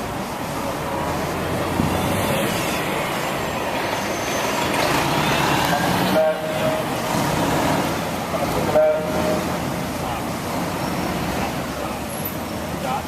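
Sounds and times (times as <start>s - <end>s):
city street traffic: 0.0s - 13.0s.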